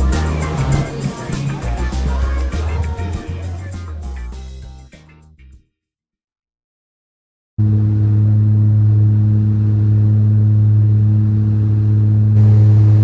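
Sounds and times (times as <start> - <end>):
engine droning steadily: 7.6 - 13.0.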